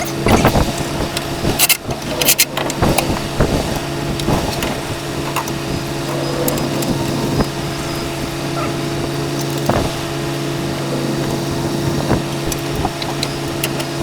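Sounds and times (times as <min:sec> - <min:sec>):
tools and parts clattering: 0:00.0 - 0:07.4
engine running: 0:00.0 - 0:14.0.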